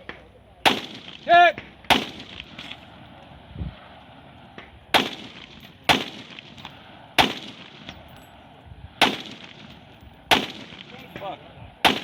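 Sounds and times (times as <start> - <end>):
gunshots with echo: 4.9 - 8.1, 10.3 - 12.0.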